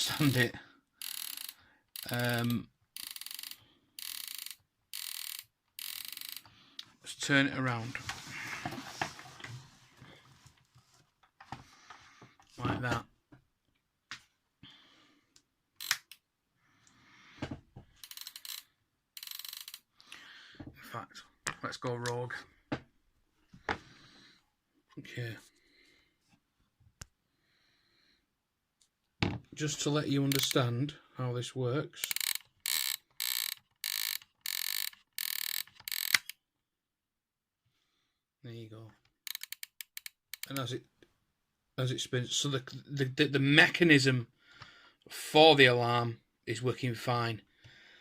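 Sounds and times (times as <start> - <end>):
clock gear ratcheting clicks: 0.0 - 6.5, 15.8 - 16.2, 18.0 - 18.6, 19.2 - 19.9, 30.3 - 30.6, 32.0 - 36.4, 39.3 - 40.7.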